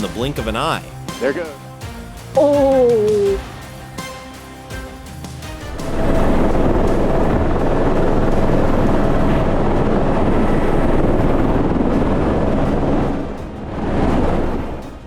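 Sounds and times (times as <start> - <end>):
helicopter hovering: 5.6 - 15.0.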